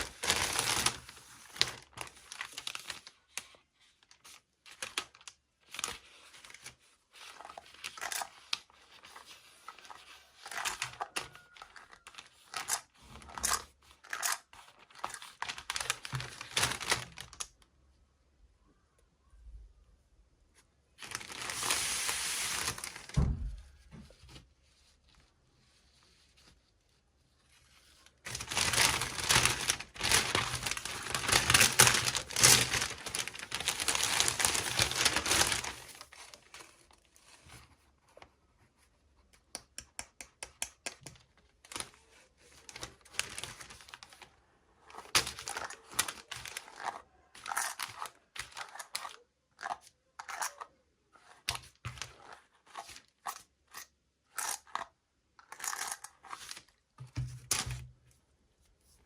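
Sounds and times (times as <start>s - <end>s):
plastic packaging tearing and crinkling: 0.0s - 17.5s, 21.0s - 23.2s, 28.2s - 37.4s, 41.6s - 50.6s.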